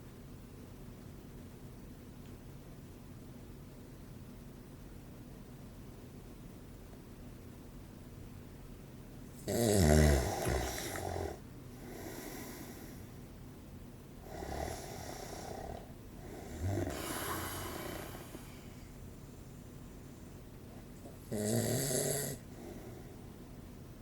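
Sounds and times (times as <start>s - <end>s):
man snoring: 9.4s - 13.0s, 14.2s - 18.6s, 21.2s - 22.9s.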